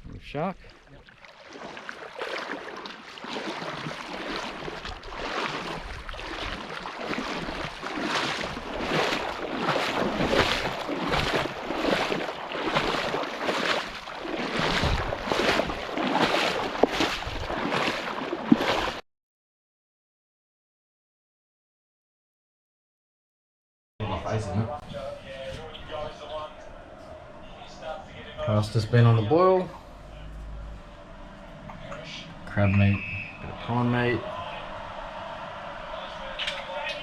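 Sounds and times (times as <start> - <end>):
rhythmic water splashing: 0.3 - 19.0, 33.0 - 37.0.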